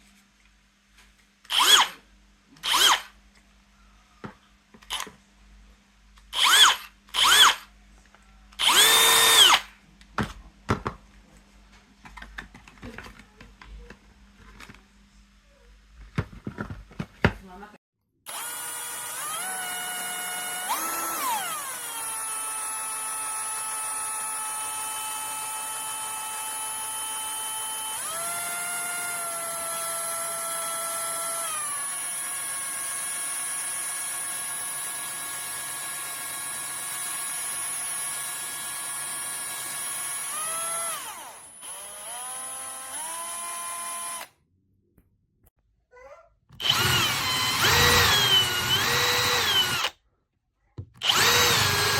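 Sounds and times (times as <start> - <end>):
cordless drill motor whining: 1.5 - 2.0, 2.6 - 3.1, 4.9 - 5.1, 6.3 - 7.7, 8.6 - 9.7, 18.3 - 44.3, 46.5 - 50.0, 51.0 - 51.9.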